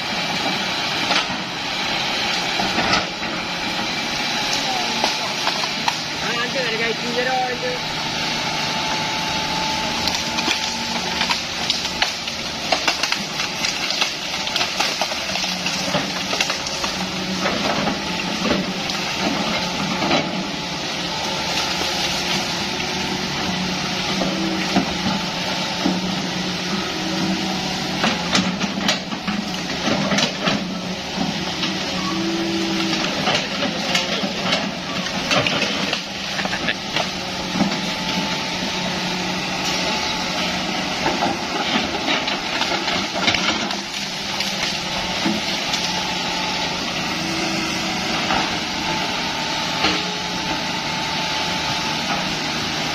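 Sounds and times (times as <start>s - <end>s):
excavator diesel engine: 0.0s - 52.9s
bamboo cracking and splintering: 10.0s - 17.9s.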